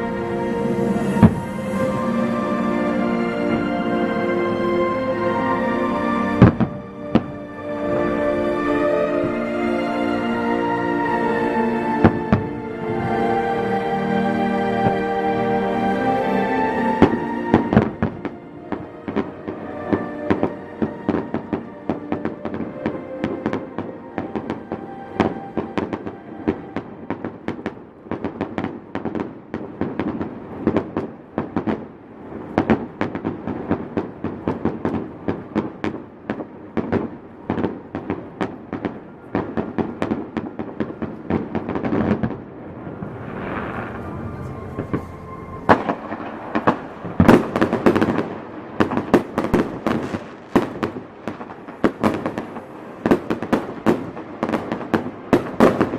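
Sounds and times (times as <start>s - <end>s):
fireworks bangs and crackling: 0.0s - 2.4s, 6.4s - 8.2s, 17.0s - 55.9s.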